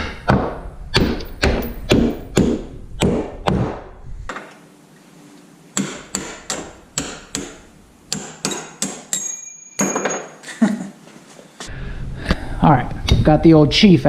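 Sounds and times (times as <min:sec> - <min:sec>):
hammer blows: 0:05.8 - 0:10.4
metallic ring: 0:08.5 - 0:10.4.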